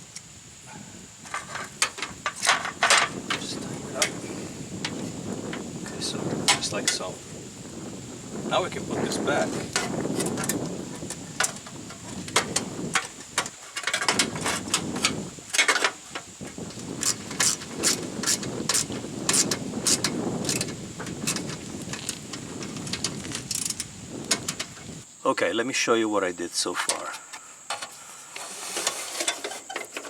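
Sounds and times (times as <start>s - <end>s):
low rumbling noise: 0.6s - 13.4s
clicks and metal knocks: 1.2s - 4.2s, 9.5s - 24.9s, 26.8s - 28.0s.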